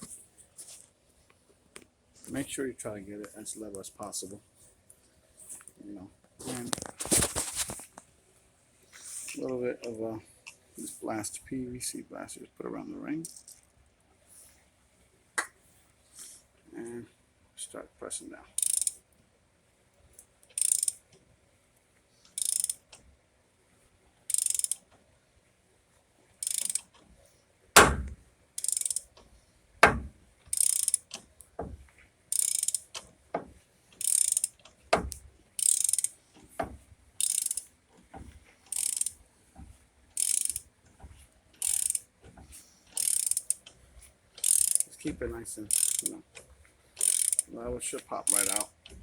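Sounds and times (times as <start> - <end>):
ratchet wrench clicking: 13.2 - 13.6, 18.5 - 19.0, 20.5 - 21.1, 22.3 - 23.0, 24.3 - 24.8, 26.4 - 27.0, 27.8 - 29.2, 29.8 - 31.3, 32.3 - 33.1, 34.0 - 36.2, 37.2 - 37.7, 38.7 - 39.2, 40.2 - 40.7, 41.6 - 42.1, 42.9 - 43.7, 44.4 - 45.0, 45.7 - 46.2, 47.0 - 47.5, 48.2 - 48.7
sharp knocks of press: 27.8 - 28.2, 29.8 - 30.1.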